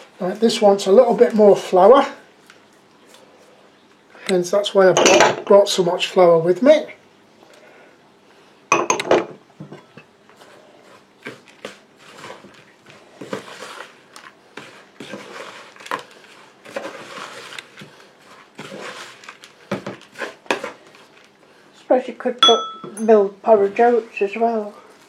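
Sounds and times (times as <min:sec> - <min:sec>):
hands squishing sticky dough: 0:10.3 - 0:21.5.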